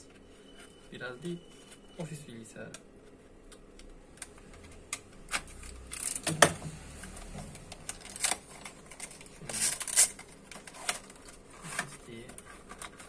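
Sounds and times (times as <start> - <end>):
laptop parts clicking and tapping: 3.5 - 11.4.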